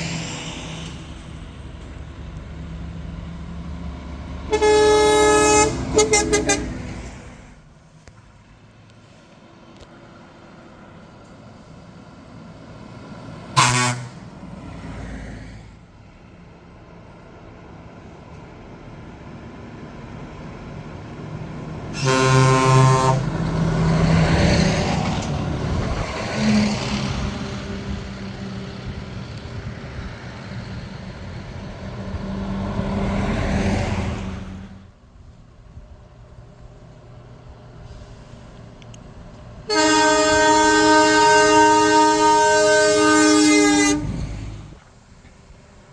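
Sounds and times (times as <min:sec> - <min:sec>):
truck engines running loudly: 0:00.0 - 0:45.9
truck air horn blasts: 0:04.5 - 0:07.3, 0:13.6 - 0:14.3, 0:21.9 - 0:23.4, 0:39.7 - 0:44.7.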